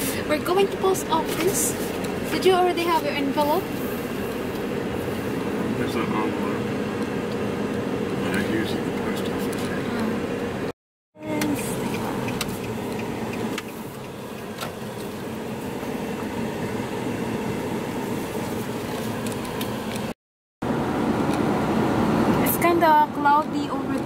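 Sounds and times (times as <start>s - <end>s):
vehicle road and engine noise: 0.0s - 24.0s.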